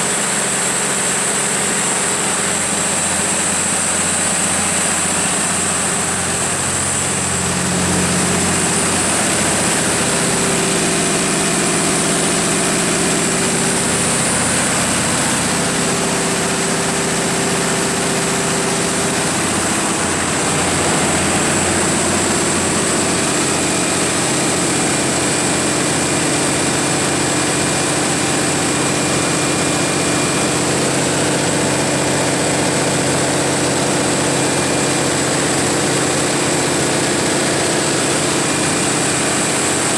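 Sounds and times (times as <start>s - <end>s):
diesel engine drone: 0.0s - 39.9s
high-pitched whine: 2.4s - 25.7s.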